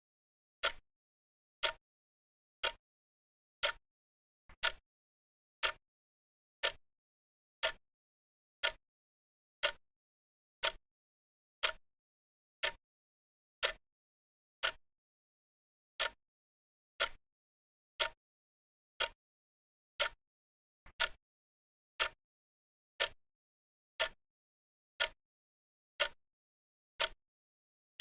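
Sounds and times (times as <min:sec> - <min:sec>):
clock ticking: 0:04.6 - 0:04.8, 0:17.0 - 0:17.2, 0:20.9 - 0:21.2.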